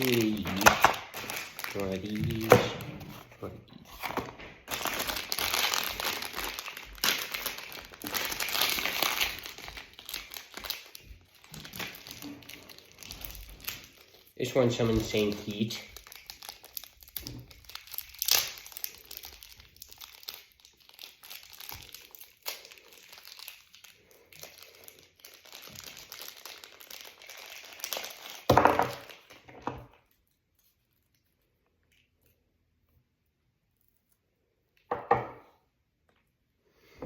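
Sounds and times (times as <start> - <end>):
packaging crinkling and tearing: 0.0 - 31.3.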